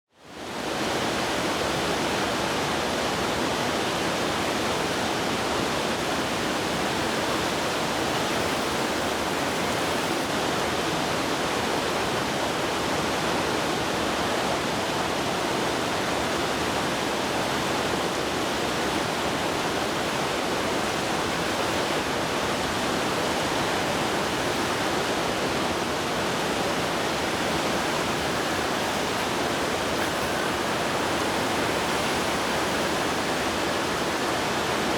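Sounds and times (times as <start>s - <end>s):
heavy rain pouring: 19.4s - 34.9s.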